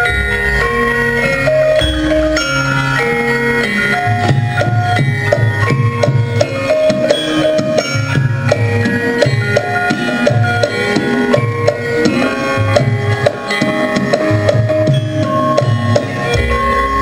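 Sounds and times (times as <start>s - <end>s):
metallophones ringing: 0.0s - 17.0s
hand drum strokes: 4.0s - 17.0s.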